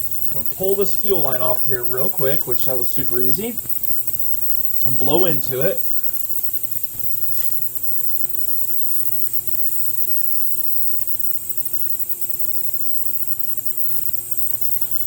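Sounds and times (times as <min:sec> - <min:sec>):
ultrasonic cleaner humming: 0:00.0 - 0:07.8
constant high hiss: 0:00.0 - 0:15.0.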